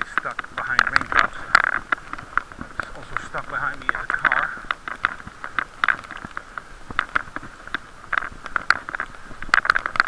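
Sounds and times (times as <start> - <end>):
muffled taps on camera case: 0.1 - 10.0.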